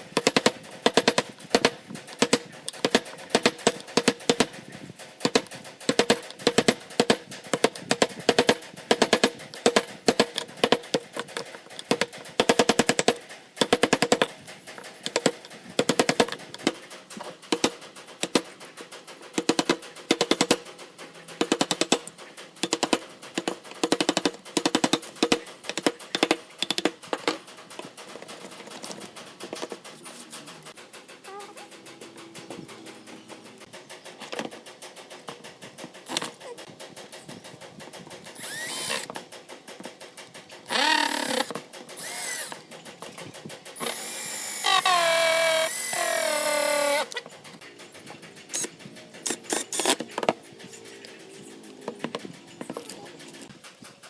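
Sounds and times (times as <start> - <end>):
rapid sharp knocks: 0.1 - 14.4.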